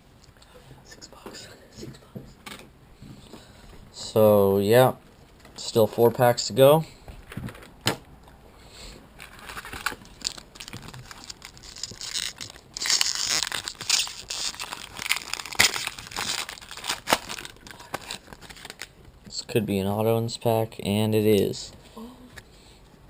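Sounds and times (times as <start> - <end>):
foil wrapper tearing and crinkling: 9.2 - 19.0.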